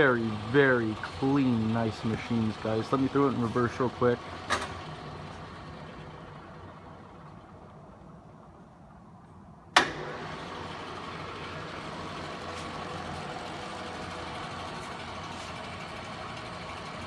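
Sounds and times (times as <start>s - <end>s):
milling machine motor humming: 10.0s - 17.0s.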